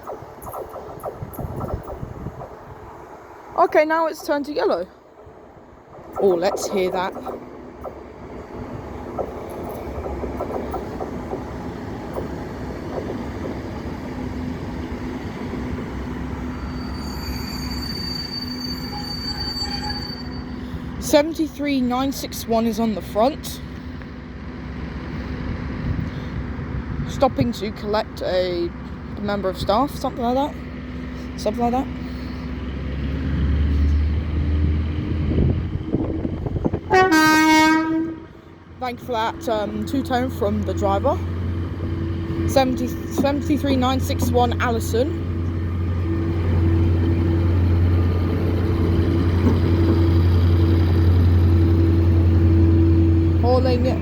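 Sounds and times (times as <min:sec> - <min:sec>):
diesel locomotive drone: 0:00.0 - 0:54.0
train clanks: 0:02.4 - 0:24.2, 0:36.6 - 0:54.0
wheels clicking over rail joints: 0:05.7 - 0:15.8, 0:38.8 - 0:52.6
high squeal from running gear: 0:16.4 - 0:20.8
two-tone train horn: 0:36.9 - 0:38.5.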